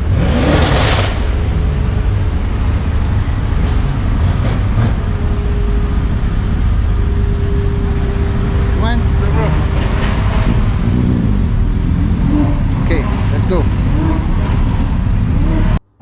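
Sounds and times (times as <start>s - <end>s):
car engine revving: 0.0s - 15.8s
car engines rumbling: 0.0s - 15.8s.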